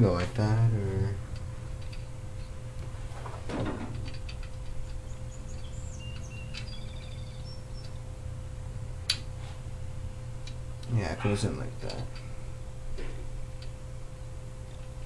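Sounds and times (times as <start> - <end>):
electrical hum: 0.0 - 15.0
clicks of small engine parts: 1.3 - 2.5.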